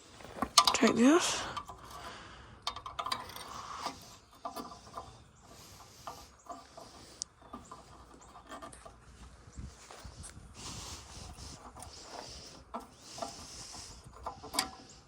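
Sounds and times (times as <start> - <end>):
plastic parts clicking and rubbing: 11.0 - 15.0.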